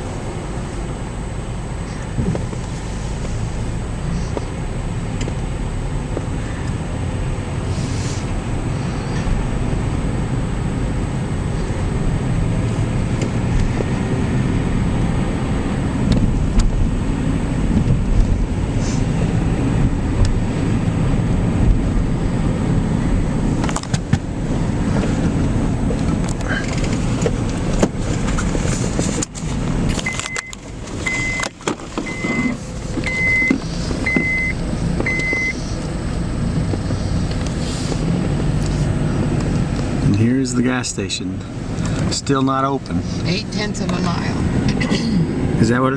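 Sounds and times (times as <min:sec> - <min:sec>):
car road and engine rumble: 0:00.0 - 0:45.9
electronic beeps: 0:30.1 - 0:31.4, 0:32.1 - 0:35.6.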